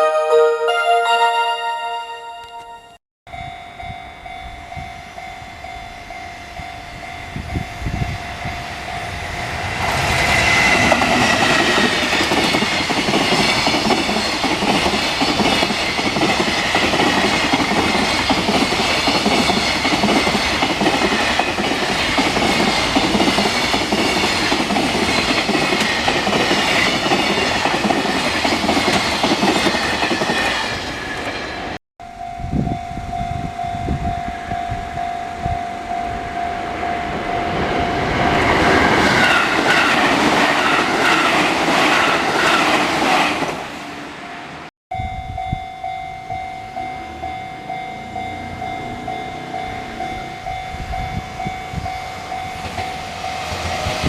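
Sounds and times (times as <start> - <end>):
train wheels on rails: 3.4 - 31.8, 36.7 - 44.4, 48.4 - 54.0.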